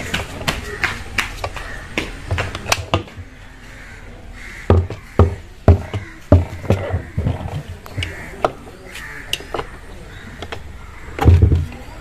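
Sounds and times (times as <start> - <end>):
sharp knocks: 4.6 - 8.6.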